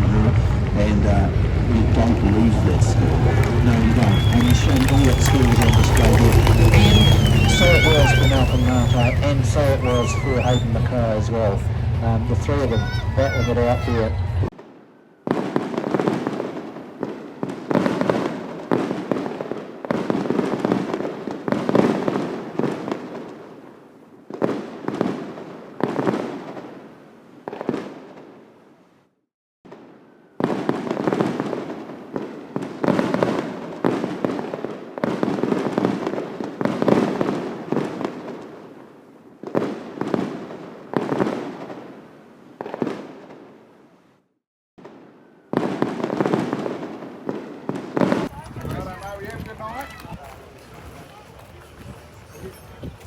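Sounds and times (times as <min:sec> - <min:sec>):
fireworks bursting and crackling: 0:00.0 - 0:13.9, 0:14.5 - 0:23.7, 0:24.3 - 0:26.8, 0:27.5 - 0:28.4, 0:29.7 - 0:43.6, 0:44.8 - 0:53.0.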